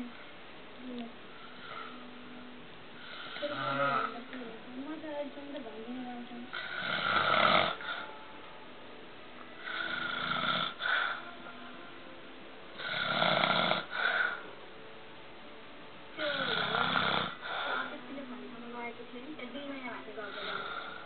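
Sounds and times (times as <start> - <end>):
man snoring rasping: 3.0 - 4.2, 6.5 - 8.1, 9.6 - 11.3, 12.8 - 14.4, 16.2 - 17.9, 20.4 - 21.0.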